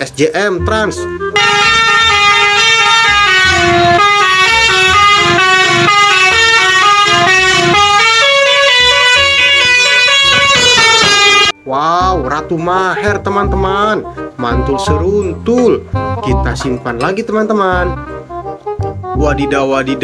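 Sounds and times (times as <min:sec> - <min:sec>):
multi-tone bus horn tune: 0:00.7 - 0:11.6, 0:17.9 - 0:19.2.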